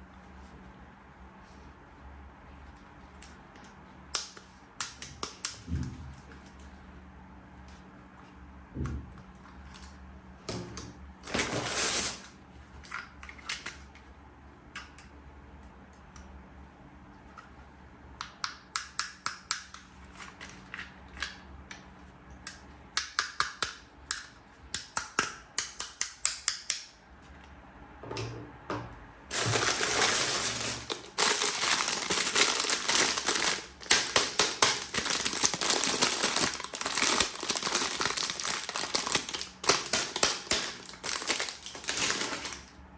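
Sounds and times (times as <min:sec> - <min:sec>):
plastic packaging crinkling: 0:29.3 - 0:42.8.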